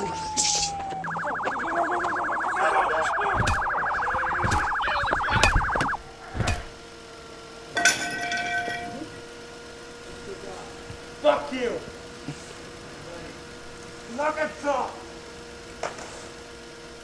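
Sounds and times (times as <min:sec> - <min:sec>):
police siren in rapid warble: 0:00.0 - 0:06.3.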